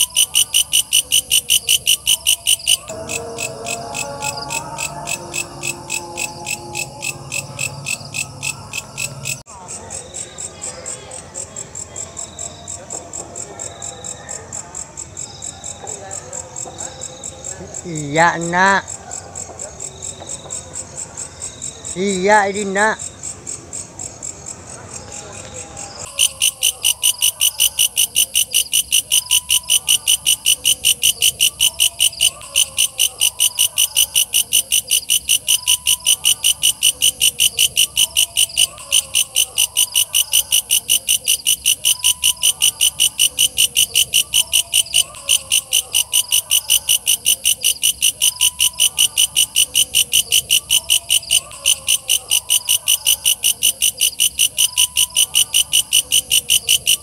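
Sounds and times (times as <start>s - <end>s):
katydid shrill chirping: 0.0s - 9.4s, 26.0s - 57.0s.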